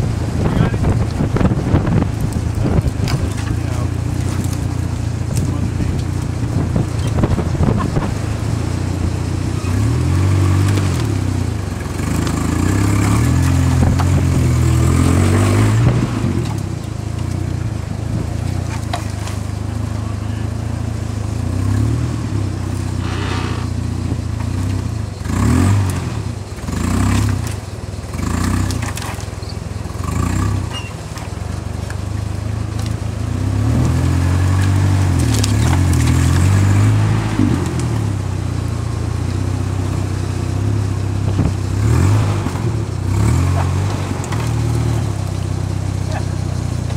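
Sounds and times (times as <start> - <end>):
vehicle engine revving: 0.0 - 46.9.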